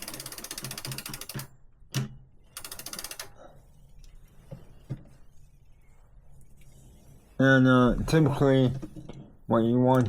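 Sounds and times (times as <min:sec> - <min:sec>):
freewheel ratchet clicking: 0:00.0 - 0:01.5, 0:02.6 - 0:03.3.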